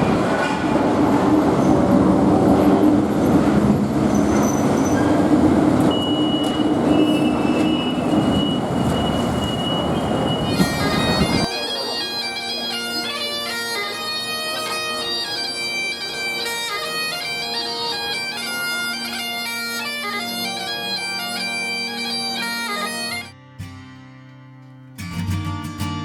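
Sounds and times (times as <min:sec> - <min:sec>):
bagpipes playing a tune: 0:05.8 - 0:23.4.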